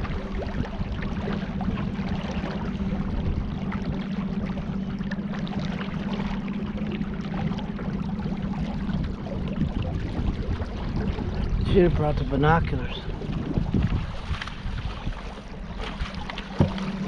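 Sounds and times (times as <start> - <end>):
boat motor humming: 0.0 - 17.0
water washing: 0.0 - 17.0
wind noise: 8.7 - 15.4.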